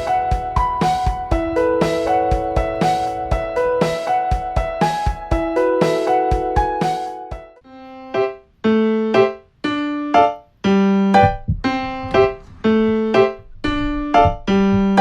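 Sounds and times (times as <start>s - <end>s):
slow electric piano notes: 0.0s - 7.5s.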